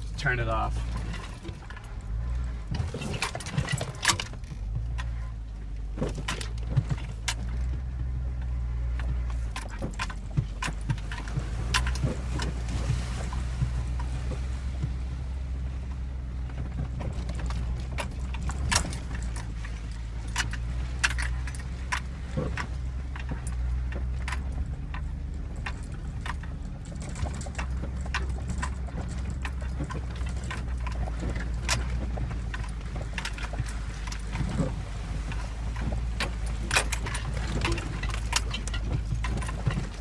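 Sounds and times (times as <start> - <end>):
loose items clicking and rattling: 16.5 - 40.0.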